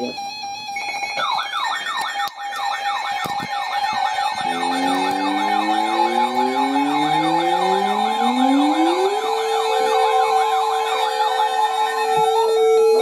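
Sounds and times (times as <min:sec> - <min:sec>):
electronic siren yelping: 0:00.0 - 0:13.0
siren with slow rising wail: 0:00.2 - 0:13.0
steady alert tone: 0:04.2 - 0:10.0.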